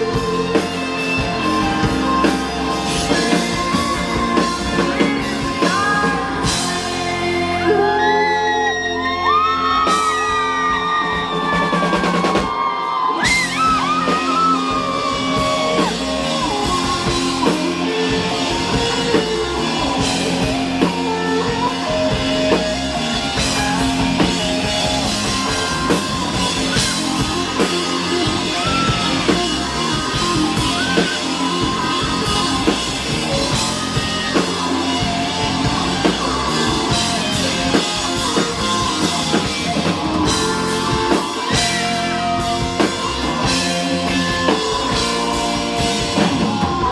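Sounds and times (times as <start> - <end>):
drum kit: 0.0 - 46.9
electric guitar: 0.0 - 46.9
person singing: 0.0 - 46.9.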